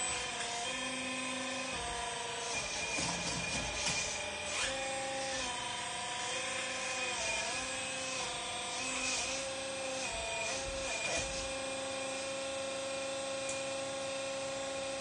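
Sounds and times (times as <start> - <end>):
small electric motors whining: 0.0 - 15.0.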